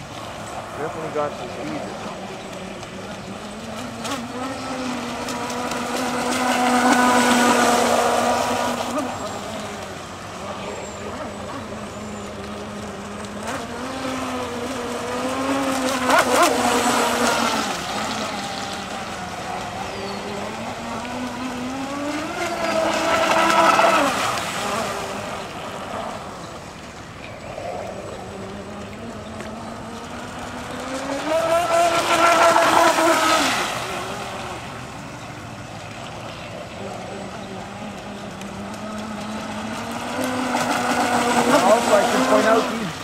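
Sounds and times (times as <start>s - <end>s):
toy speedboat motor whining: 0.2s - 43.0s.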